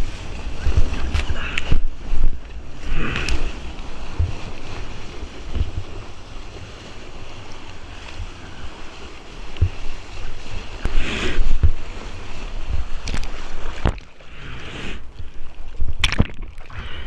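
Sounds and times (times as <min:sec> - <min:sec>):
ocean surf splashing: 0:00.0 - 0:17.0
wind rumble on microphone: 0:00.0 - 0:17.0
sharp knocks and splashes: 0:12.7 - 0:14.2, 0:15.8 - 0:16.9.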